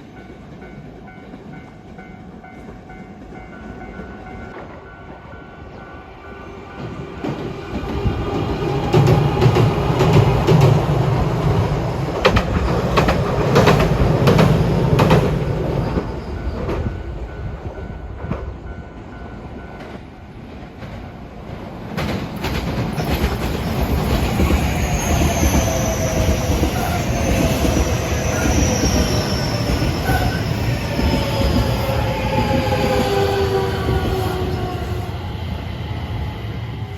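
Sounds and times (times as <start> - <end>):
train running sound: 0.0 - 36.9
train wheels clacking over joints: 21.9 - 34.2.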